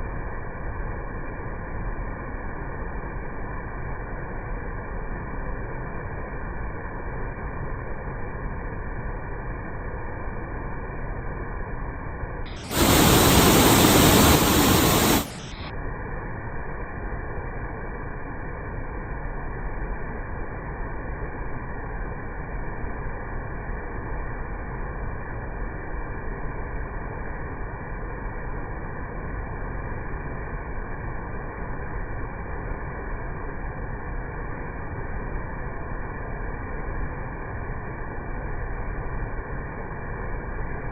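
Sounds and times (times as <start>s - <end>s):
muffled waterfall rushing: 12.5s - 15.7s
loud bright rushing noise: 12.6s - 15.6s.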